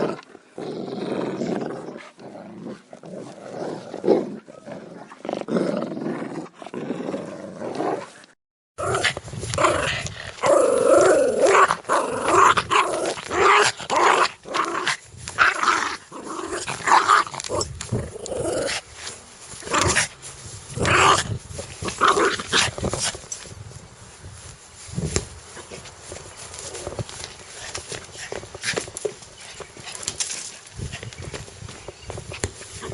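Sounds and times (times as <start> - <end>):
dogs growling: 0.0 - 8.2, 8.8 - 23.2.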